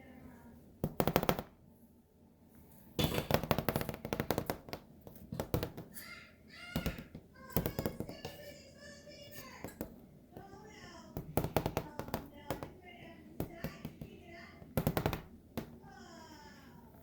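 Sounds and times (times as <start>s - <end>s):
knocks taps and rattling: 3.0s - 6.0s, 6.6s - 8.6s, 9.4s - 15.8s.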